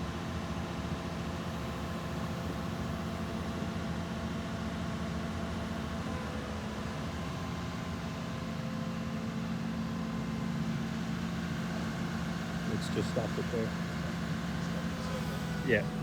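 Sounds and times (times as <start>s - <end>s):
diesel engine running: 6.0s - 16.0s.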